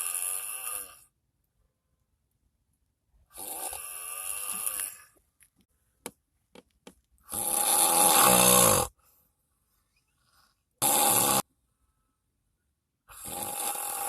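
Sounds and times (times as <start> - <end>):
person snoring: 0.0 - 1.0, 3.3 - 5.1, 7.3 - 9.0, 10.8 - 11.5, 13.1 - 14.0.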